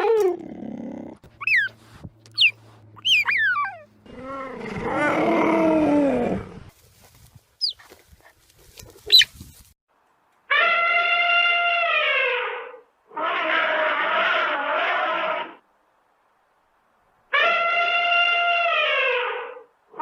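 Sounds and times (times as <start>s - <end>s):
animal rough drawn-out call: 10.5s - 15.6s.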